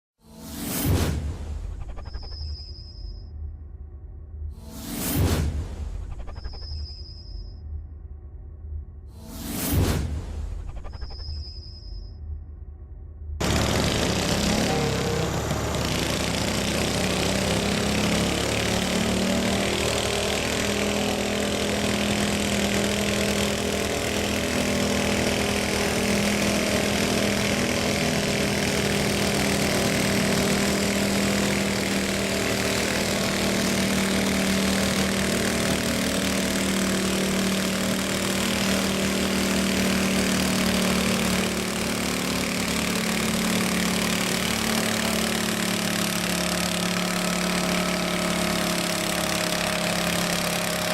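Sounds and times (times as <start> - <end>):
lawn mower engine running: 13.4 - 50.9.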